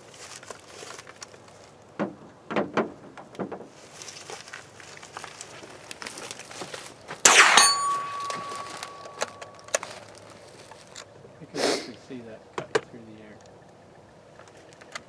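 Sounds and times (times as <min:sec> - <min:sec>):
rifle shot: 0:07.3 - 0:09.5
steady ringing tone: 0:07.3 - 0:09.7.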